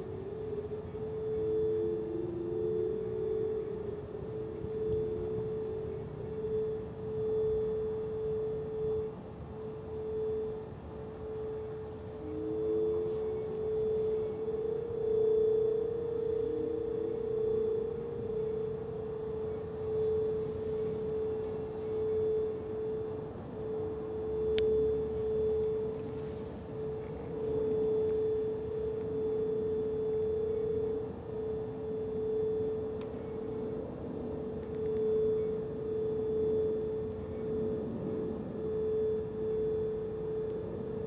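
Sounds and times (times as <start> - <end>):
fainter sirens winding up: 0.0 - 41.0
rotating siren steady tone: 0.0 - 41.0.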